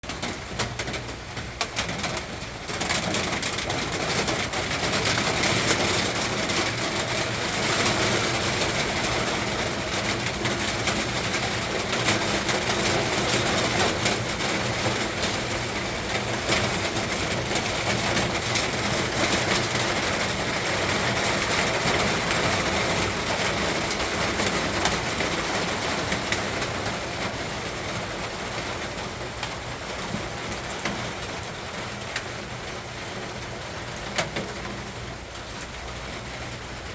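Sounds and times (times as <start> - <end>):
rain shower falling: 0.0 - 36.9
raindrops ticking on surfaces: 0.0 - 36.9.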